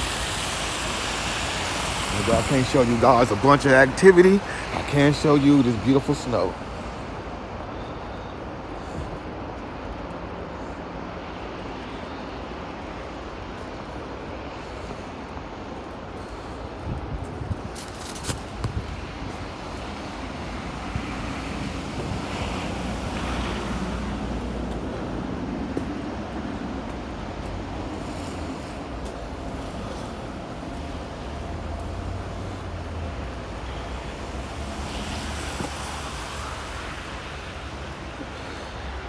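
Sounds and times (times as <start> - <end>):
wind buffeting microphone: 13.2 - 39.0.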